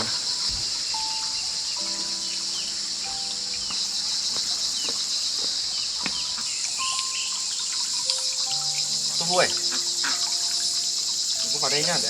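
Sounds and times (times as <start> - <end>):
faint bird chirps: 0.0 - 12.0
high-pitched insect chorus: 0.0 - 12.0.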